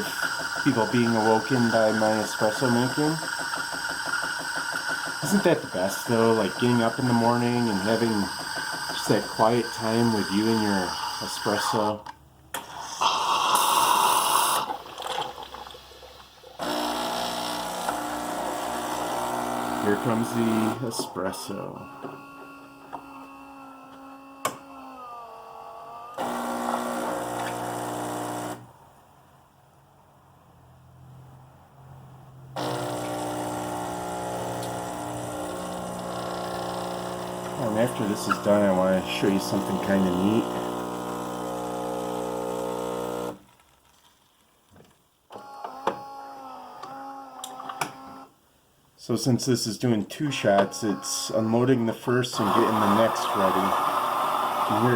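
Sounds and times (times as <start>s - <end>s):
motor whirring: 0.0s - 11.8s, 26.0s - 28.6s, 32.6s - 43.4s, 52.4s - 54.9s
pump buzzing: 0.0s - 11.8s, 16.6s - 28.7s, 32.6s - 43.4s, 52.4s - 54.9s
espresso machine humming: 0.0s - 11.9s, 12.6s - 14.7s, 16.6s - 23.8s, 26.2s - 28.6s, 32.6s - 43.4s, 52.4s - 54.9s.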